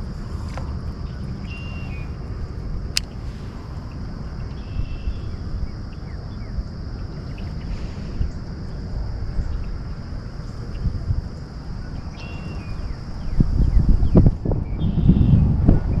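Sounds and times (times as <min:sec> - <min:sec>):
faint high hum: 0:00.0 - 0:16.0
wind rumble on microphone: 0:00.0 - 0:16.0
faint bird chirps: 0:01.0 - 0:02.2, 0:03.1 - 0:08.4, 0:11.8 - 0:15.4.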